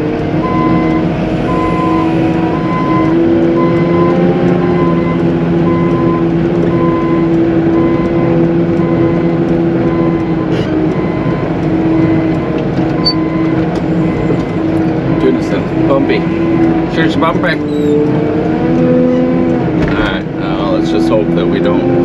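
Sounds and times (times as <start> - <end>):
loader diesel engine running: 0.0 - 22.0
reversing alarm beeping: 0.4 - 16.1.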